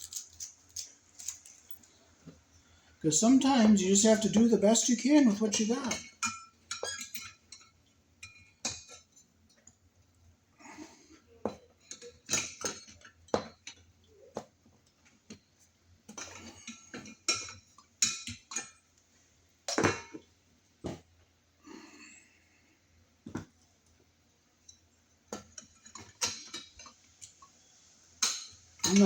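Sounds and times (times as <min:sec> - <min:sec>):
metal screws clicking and scraping: 0:00.0 - 0:02.0.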